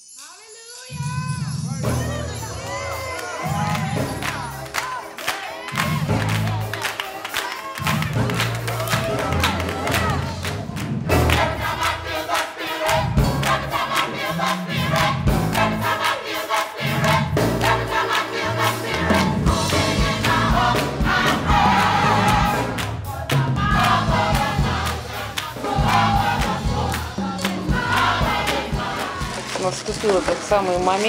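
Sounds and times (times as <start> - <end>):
choir-like singing: 1.8 - 29.6
music with steady beat: 1.8 - 29.6.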